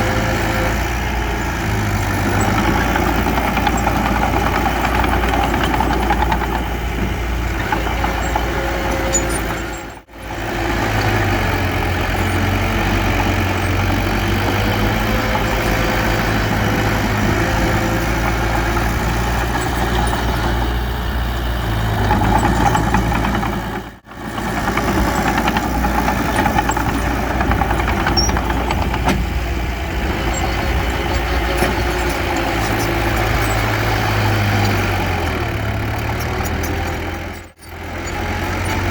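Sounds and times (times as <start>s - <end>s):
heavy diesel engine droning: 0.0s - 38.9s.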